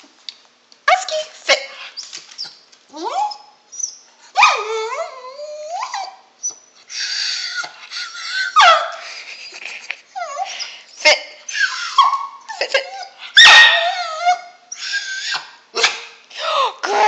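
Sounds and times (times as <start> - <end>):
dog whining and yipping: 1.9 - 9.0, 10.2 - 16.0.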